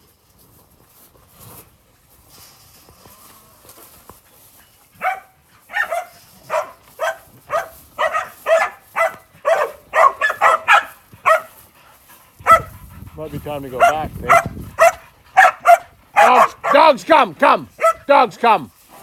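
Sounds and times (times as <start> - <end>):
dog barking: 5.0 - 11.6, 12.4 - 12.8, 13.8 - 17.0, 17.8 - 18.1.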